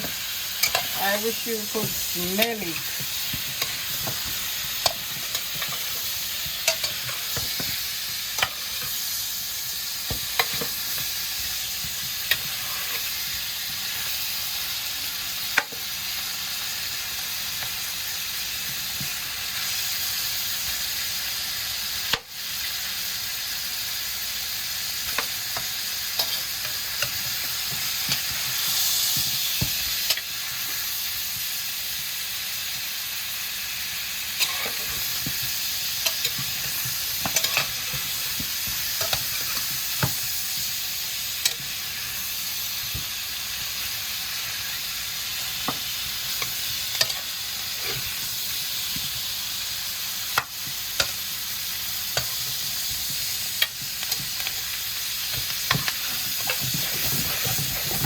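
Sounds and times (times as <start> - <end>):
spoon stirring and clicking on pot: 0.0 - 1.0, 1.8 - 9.0, 10.1 - 11.1, 25.0 - 30.3, 34.4 - 40.8, 45.6 - 48.2, 50.4 - 51.3, 52.1 - 58.0
meat sizzling in butter: 0.0 - 58.0.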